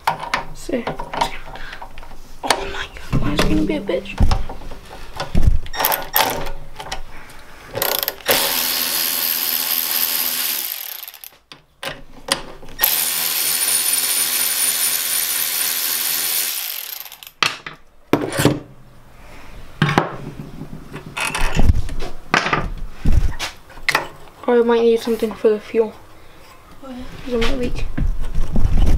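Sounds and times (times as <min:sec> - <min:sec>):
tools clicking and knocking: 0:07.8 - 0:08.5, 0:10.7 - 0:12.9
electric ratchet running: 0:07.8 - 0:11.4, 0:12.8 - 0:17.4.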